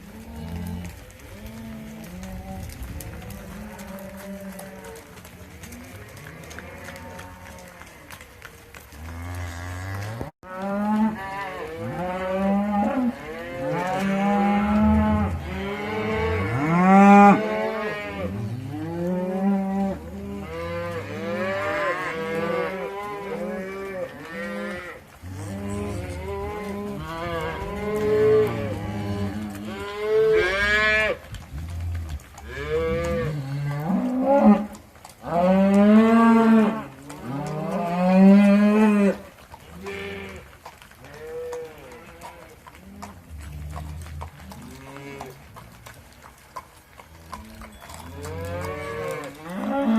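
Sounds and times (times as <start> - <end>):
cattle mooing: 0.0 - 8.2, 8.9 - 45.8, 47.1 - 49.9.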